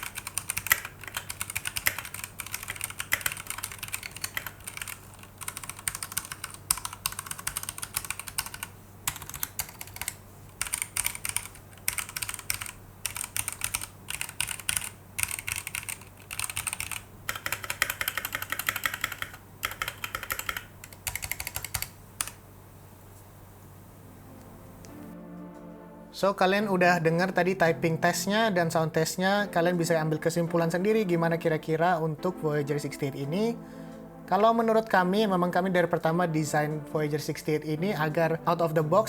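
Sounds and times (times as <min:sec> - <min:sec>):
mechanical keyboard typing: 0:00.0 - 0:22.4.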